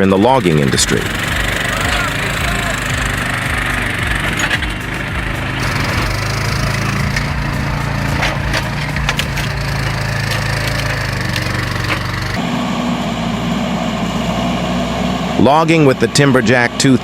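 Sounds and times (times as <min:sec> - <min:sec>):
different engine running: 0:00.0 - 0:17.0
machine engine running: 0:00.0 - 0:17.0
wood cracking and splintering: 0:00.4 - 0:12.4.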